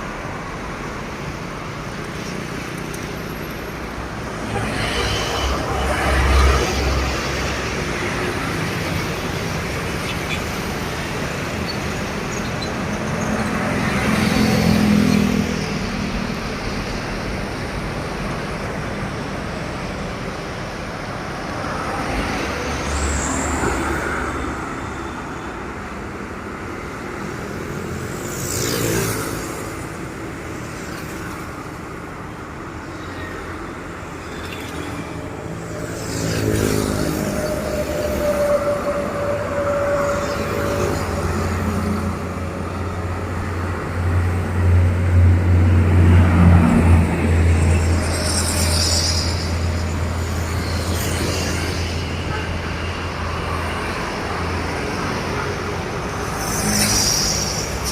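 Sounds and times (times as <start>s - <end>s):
traffic hum: 0.0s - 57.9s
vehicles passing by: 0.0s - 57.9s.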